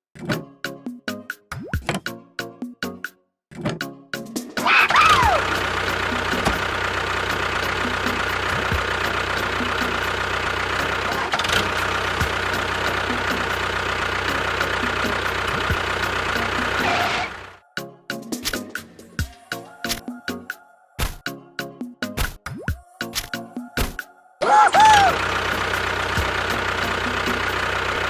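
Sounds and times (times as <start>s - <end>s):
engine starting whine: 4.6s - 17.6s, 24.4s - 28.0s
small engine running: 4.6s - 17.6s, 24.8s - 28.0s.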